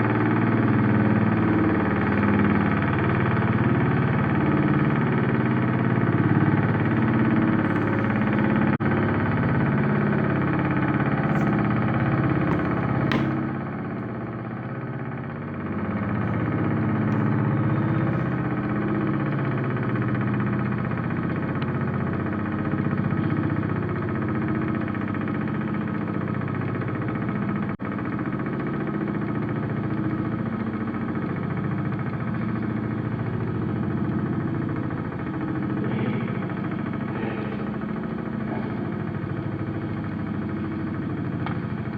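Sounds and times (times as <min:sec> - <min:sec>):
air raid siren low growl: 0:00.0 - 0:25.0, 0:34.8 - 0:41.9.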